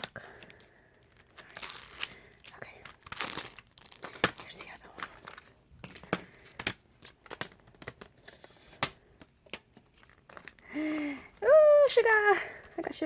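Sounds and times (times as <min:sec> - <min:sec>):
plastic wrap crinkling and tearing: 0:00.0 - 0:08.9.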